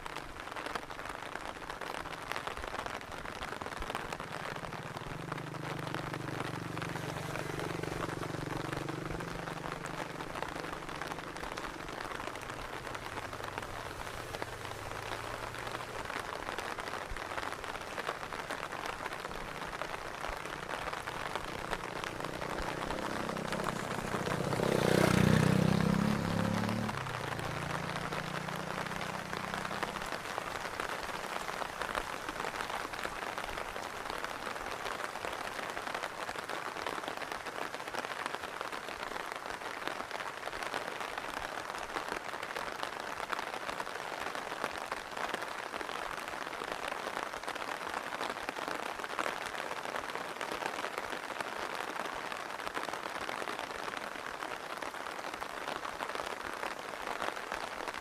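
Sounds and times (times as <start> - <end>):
rain falling: 0.0 - 58.0
low engine hum: 20.5 - 30.1.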